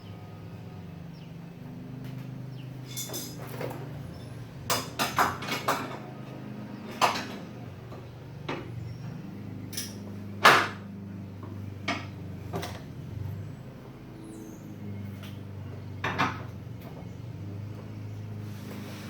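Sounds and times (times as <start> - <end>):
metal tools clanking on metal: 2.2 - 9.0, 9.7 - 10.1.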